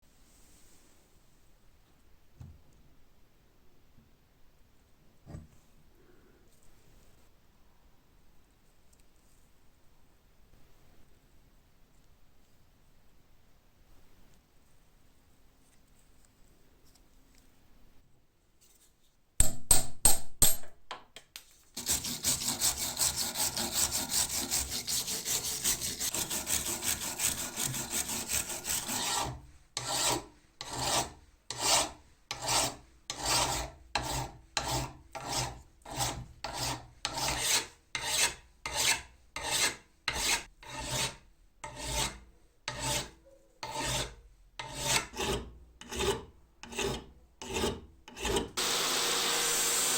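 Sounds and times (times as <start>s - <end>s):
scrubbing rust off metal: 21.8s - 29.9s.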